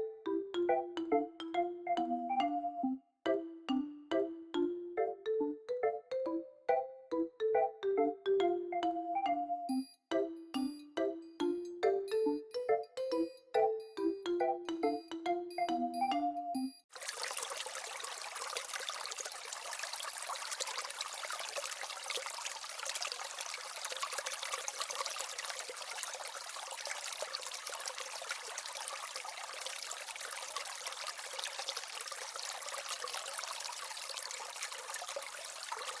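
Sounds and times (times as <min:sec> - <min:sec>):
trickling running water: 0:16.9 - 0:36.0.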